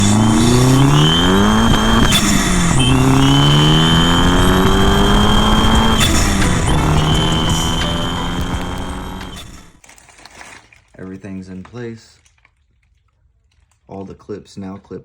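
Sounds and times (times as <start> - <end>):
car engine accelerating: 0.0 - 9.8.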